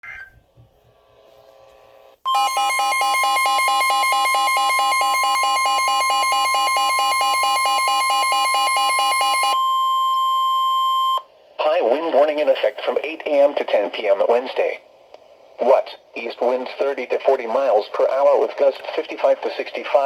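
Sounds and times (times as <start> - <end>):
steady high tone: 2.3 - 11.3.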